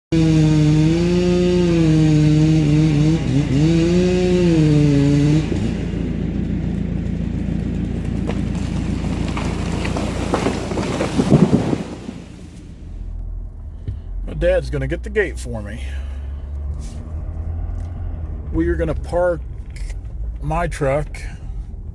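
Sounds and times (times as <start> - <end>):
chainsaw running: 0.1 - 12.6
low engine rumble: 1.6 - 21.9.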